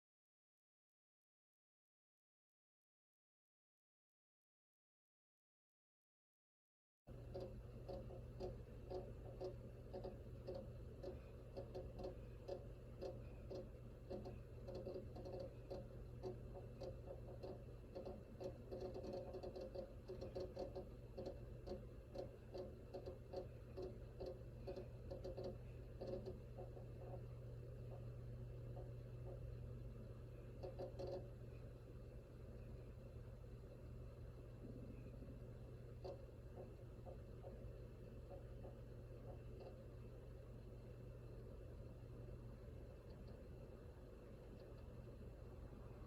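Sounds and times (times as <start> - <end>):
hard disk clicking: 7.1 - 46.0
steady low hum: 7.1 - 46.0.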